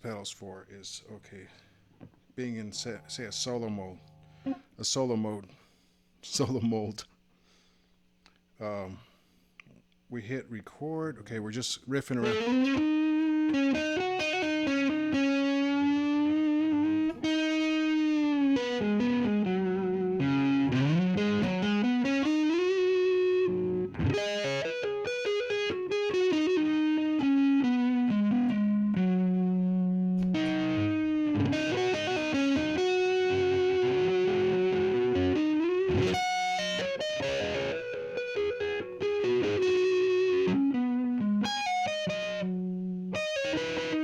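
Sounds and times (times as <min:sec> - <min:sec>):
distorted electric guitar: 0:02.0 - 0:04.7, 0:12.2 - 0:44.0.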